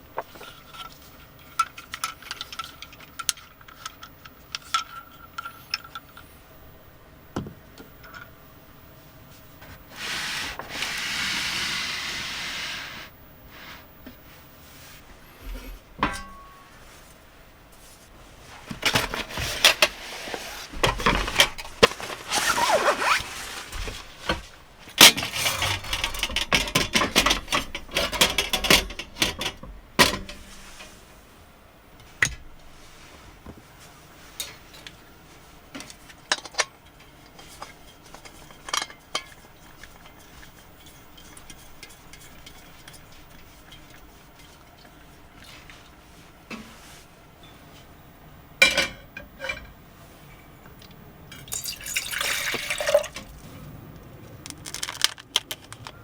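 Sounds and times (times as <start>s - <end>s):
dishes and utensils clinking: 15.4s - 16.9s, 48.6s - 49.8s, 51.3s - 53.3s.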